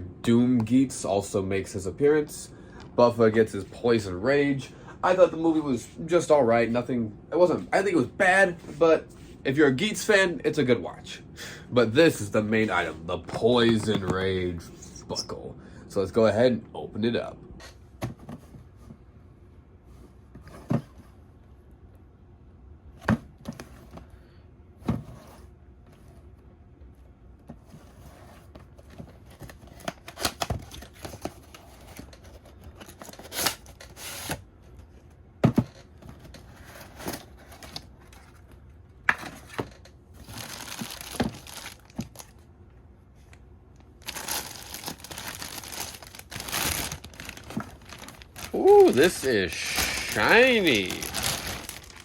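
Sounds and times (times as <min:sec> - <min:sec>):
box and plastic parts knocking: 0:35.4 - 0:37.8
plastic wrap crinkling: 0:40.2 - 0:42.3, 0:43.8 - 0:52.0.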